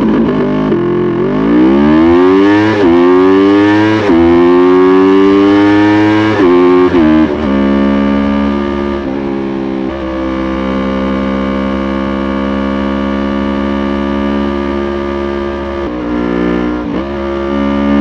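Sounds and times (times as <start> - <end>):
motorcycle engine revving: 0.0 - 18.0.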